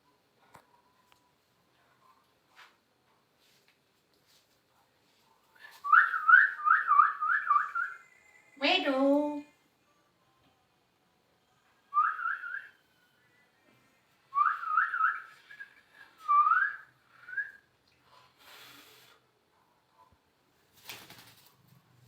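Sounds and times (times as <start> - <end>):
person whistling rising notes: 14.3 - 17.6.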